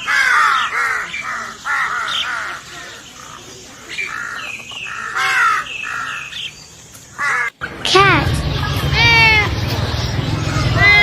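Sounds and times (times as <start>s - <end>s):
crows cawing: 0.0s - 3.4s, 4.0s - 6.5s, 7.1s - 7.6s.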